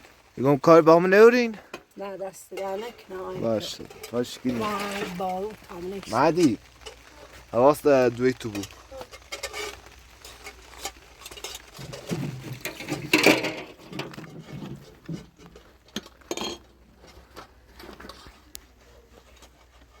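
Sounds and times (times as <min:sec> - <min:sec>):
household objects knocking and clinking: 0:11.3 - 0:16.7.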